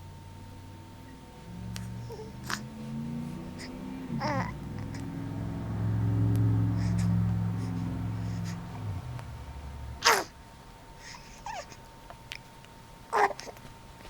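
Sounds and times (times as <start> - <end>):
low drawn-out groaning: 0.4 - 10.6
person hiccuping: 10.0 - 10.3.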